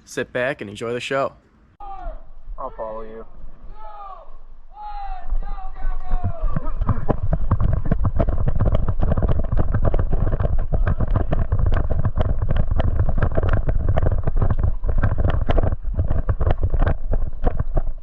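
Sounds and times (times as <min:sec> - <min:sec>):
wind buffeting microphone: 0:04.4 - 0:18.0
quick footsteps: 0:05.2 - 0:18.0.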